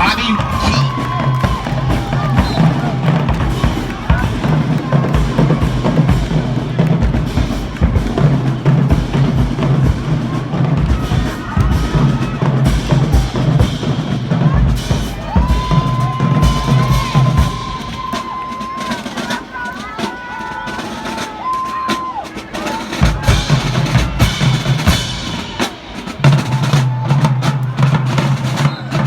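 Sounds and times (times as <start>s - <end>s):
bass drums booming: 0.0s - 17.8s
snare drums: 0.0s - 29.0s.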